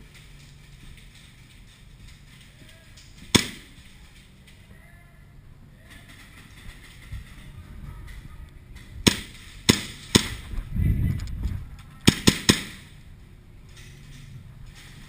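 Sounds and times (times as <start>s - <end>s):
airsoft gun shots: 3.2s - 3.7s, 9.0s - 10.4s, 12.0s - 12.9s
low rumble: 7.0s - 12.1s.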